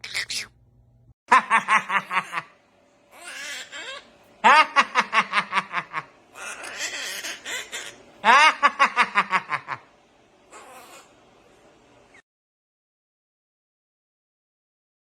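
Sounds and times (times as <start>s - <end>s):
parrot imitating laugh: 0.0s - 0.5s, 1.3s - 9.9s, 10.5s - 11.2s
parrot raspy chatter: 0.0s - 0.6s, 6.4s - 8.1s, 10.5s - 11.2s.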